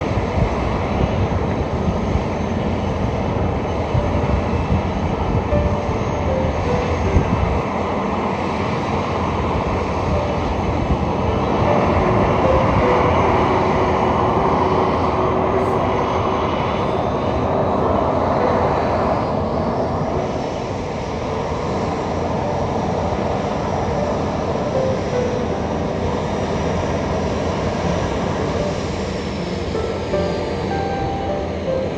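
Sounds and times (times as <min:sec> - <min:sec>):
faint engine whine: 0:00.0 - 0:31.9
jet engines running: 0:00.0 - 0:31.9.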